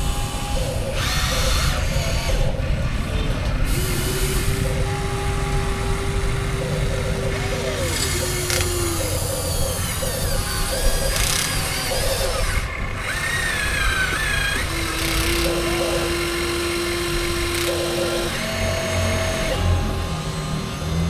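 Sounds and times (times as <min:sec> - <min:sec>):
small electric motors whining: 0:00.0 - 0:21.0.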